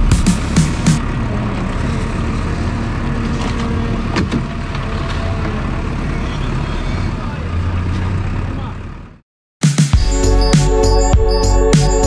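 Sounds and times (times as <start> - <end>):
vehicle engine rumbling: 0.0 - 9.2.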